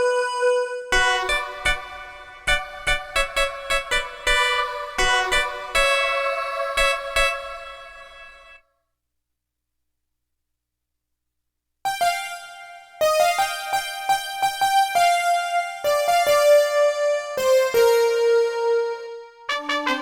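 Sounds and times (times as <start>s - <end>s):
synthesizer melody: 0.0s - 8.6s.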